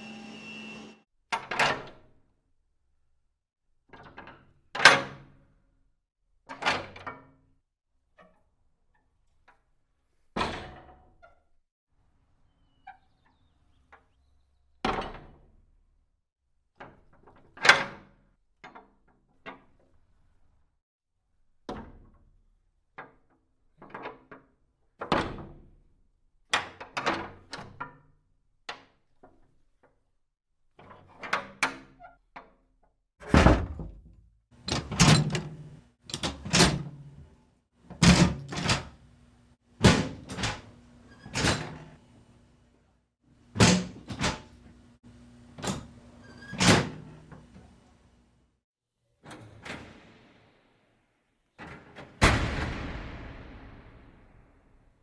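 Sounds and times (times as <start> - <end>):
heavy iron doors banging shut: 33.2 - 37.3, 37.9 - 39.0, 39.8 - 41.9, 51.6 - 54.8.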